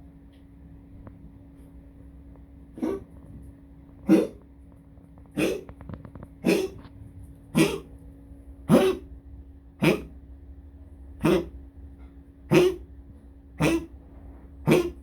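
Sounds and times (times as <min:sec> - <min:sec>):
pet coughing: 0:02.8 - 0:03.1, 0:04.0 - 0:04.4, 0:05.3 - 0:05.8, 0:06.4 - 0:06.9, 0:07.5 - 0:08.0, 0:08.7 - 0:09.2, 0:09.8 - 0:10.2, 0:11.2 - 0:11.6, 0:12.5 - 0:13.0, 0:13.6 - 0:14.0, 0:14.6 - 0:15.0.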